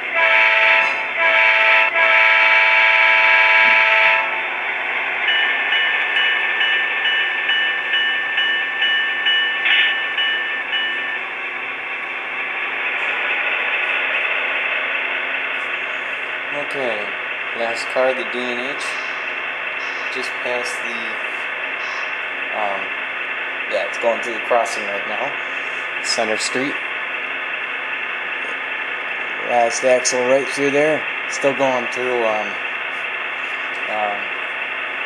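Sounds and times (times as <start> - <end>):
multi-chime locomotive horn blasts: 0.0 - 4.4
locomotive engine: 0.0 - 35.0
bell ringing: 5.3 - 11.3.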